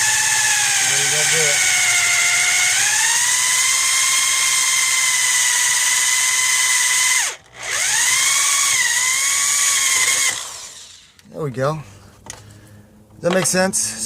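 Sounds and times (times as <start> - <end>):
electric drill whining: 0.0 - 11.2.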